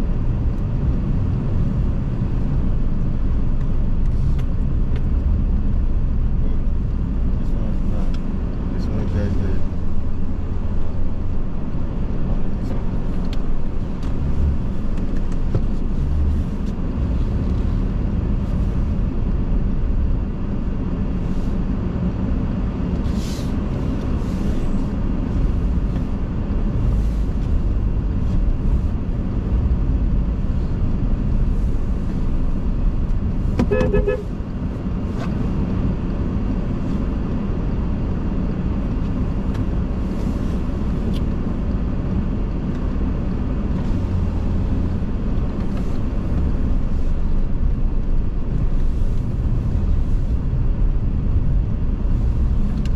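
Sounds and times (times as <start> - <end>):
car engine and road noise: 0.0 - 52.9
car horn: 33.6 - 34.4.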